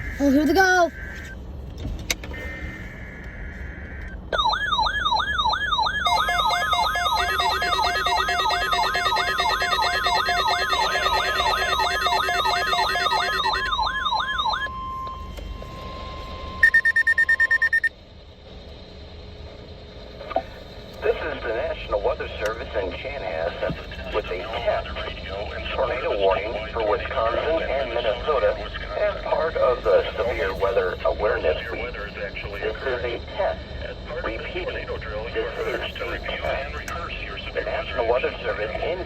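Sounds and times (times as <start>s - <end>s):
warbling siren-like alarm: 0.0s - 1.4s, 2.3s - 17.9s
steady alert tone: 4.4s - 14.8s, 16.6s - 17.9s
rapid high beeps: 4.4s - 17.9s.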